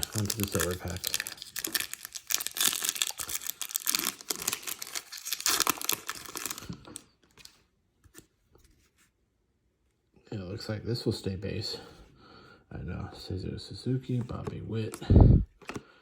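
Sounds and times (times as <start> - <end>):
wrapper being torn and crinkled: 0.0 - 7.5.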